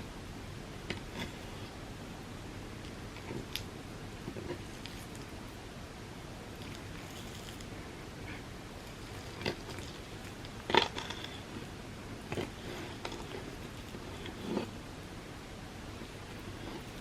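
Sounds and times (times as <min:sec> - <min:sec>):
low hiss: 0:00.0 - 0:17.0
biting and chewing: 0:08.8 - 0:11.7.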